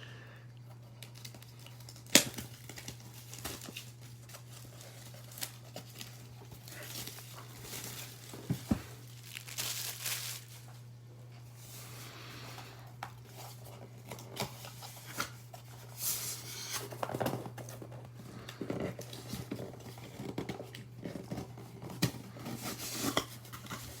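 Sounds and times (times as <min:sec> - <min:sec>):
steady low hum: 0:00.0 - 0:24.0
plastic wrapping crinkling and tearing: 0:00.9 - 0:10.9.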